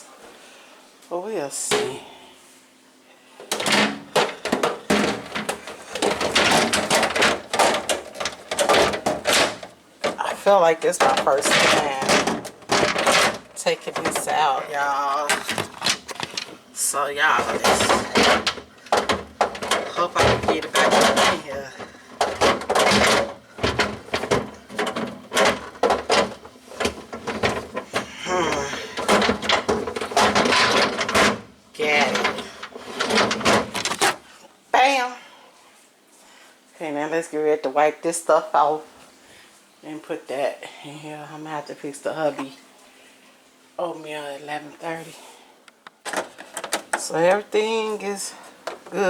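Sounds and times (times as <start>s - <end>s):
plastic shelving clattering and scraping: 1.6s - 2.0s, 3.4s - 34.3s, 46.0s - 49.0s.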